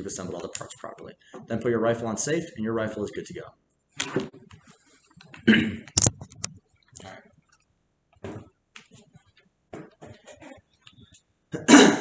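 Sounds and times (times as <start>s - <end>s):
soft knocks and rustles: 8.2s - 11.2s.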